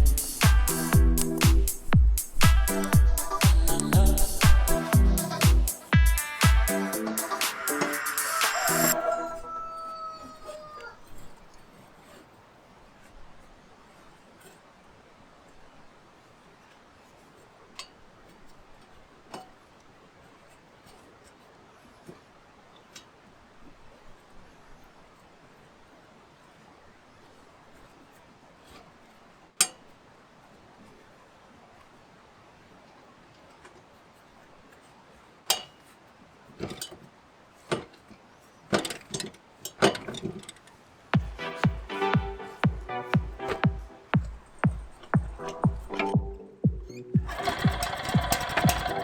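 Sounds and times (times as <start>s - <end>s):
faint hiss: 0.0s - 9.0s.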